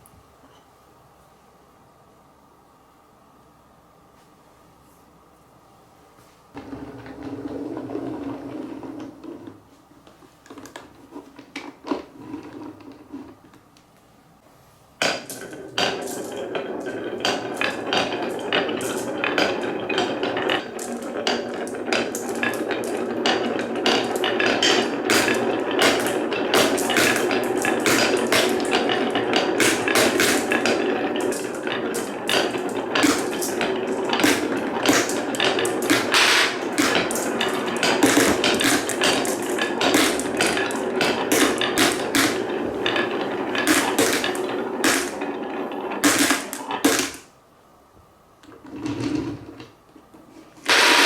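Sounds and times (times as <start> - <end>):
balls clacking against wood: 6.6 - 9.6, 15.0 - 47.3
balls rolling on wooden marble run: 6.6 - 9.7, 10.5 - 13.6, 15.0 - 47.3, 48.4 - 49.8, 50.6 - 51.0.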